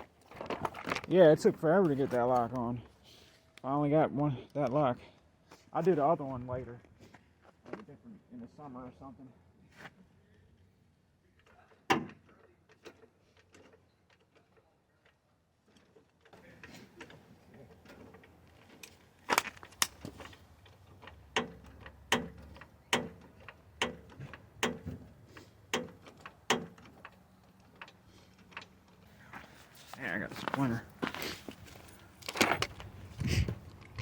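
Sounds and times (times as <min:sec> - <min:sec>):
clicks and handling noises: 0:00.0 - 0:02.7, 0:12.3 - 0:34.0.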